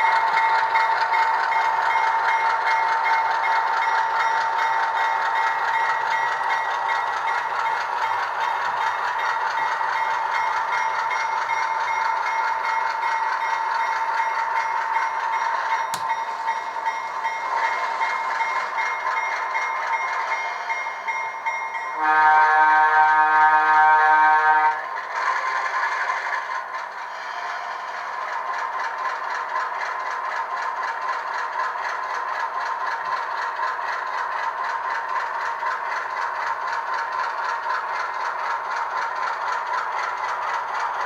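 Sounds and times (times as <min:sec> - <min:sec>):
sharp click: 0:15.9 - 0:16.2.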